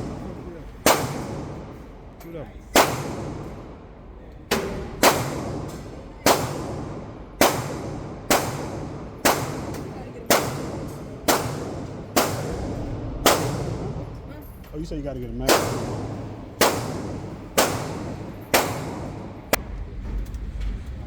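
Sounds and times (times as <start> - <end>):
pistol shots: 0.0 - 1.8, 2.7 - 3.8, 4.5 - 14.0, 15.5 - 19.4.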